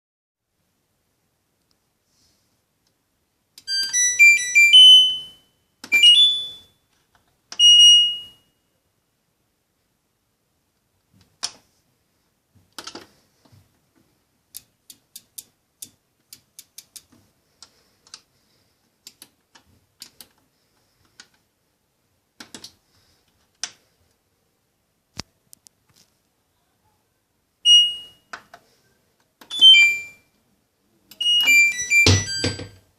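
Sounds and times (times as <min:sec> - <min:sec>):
electronic beep tones: 0:03.7 - 0:06.7, 0:27.7 - 0:28.3, 0:29.5 - 0:30.2, 0:31.2 - 0:32.8.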